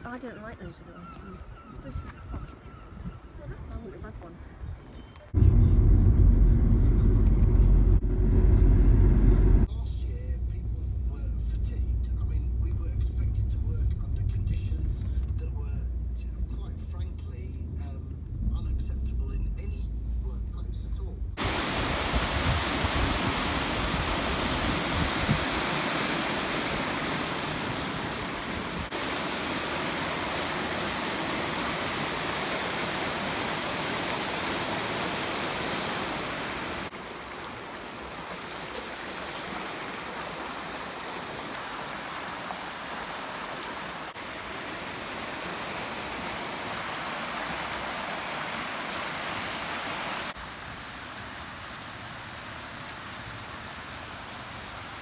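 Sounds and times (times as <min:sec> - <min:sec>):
rushing water: 0:21.4 - 0:55.0.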